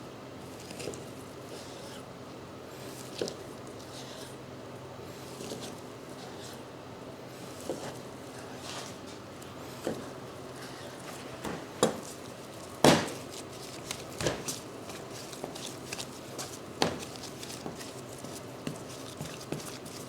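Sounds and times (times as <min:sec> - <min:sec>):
knife knocking on cutting board: 0:12.8 - 0:13.2.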